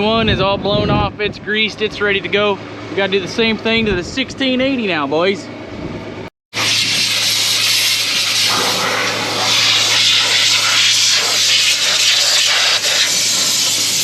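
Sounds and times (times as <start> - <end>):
compressed air hissing: 6.6 - 14.0.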